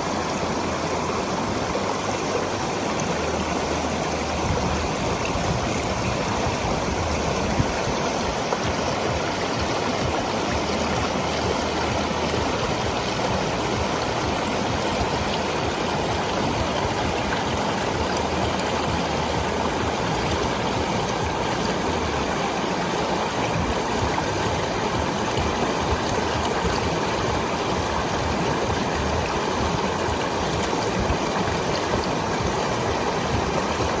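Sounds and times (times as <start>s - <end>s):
small waterfall splashing: 0.0s - 34.0s.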